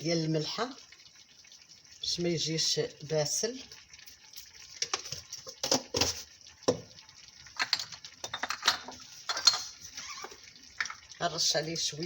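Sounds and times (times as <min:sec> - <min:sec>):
kitchen utensils clicking: 0:07.6 - 0:09.7.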